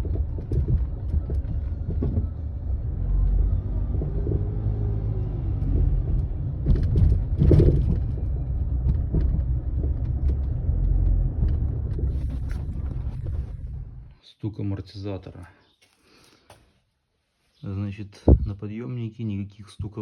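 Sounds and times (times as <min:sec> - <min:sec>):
car road rumble: 0:00.0 - 0:14.2, 0:18.2 - 0:18.6
suspension knocks: 0:05.5 - 0:13.9, 0:18.3 - 0:18.6.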